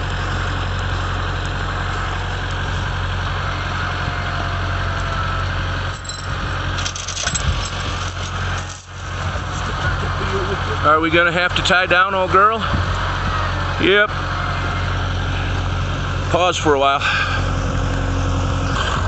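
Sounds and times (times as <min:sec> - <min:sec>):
vehicle engine idling: 0:00.0 - 0:19.0
metallic clanks and rattles: 0:05.9 - 0:09.0.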